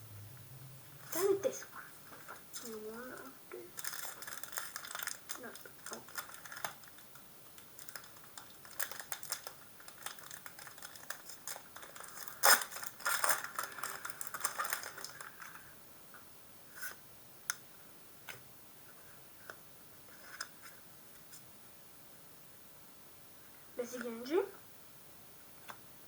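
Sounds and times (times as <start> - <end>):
foil pack tearing: 3.8 - 7.0, 7.8 - 15.6.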